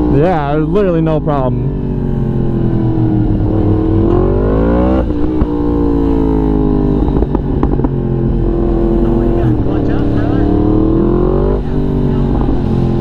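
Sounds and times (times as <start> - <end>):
motorcycle engine accelerating: 0.0 - 13.0
exhaust crackles and pops: 5.0 - 5.8, 6.8 - 10.4.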